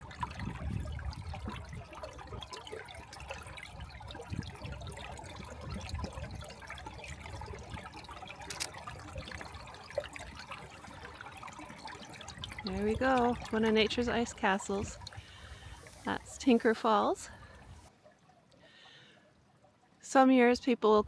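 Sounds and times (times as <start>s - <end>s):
water running under ice: 0.0s - 17.9s.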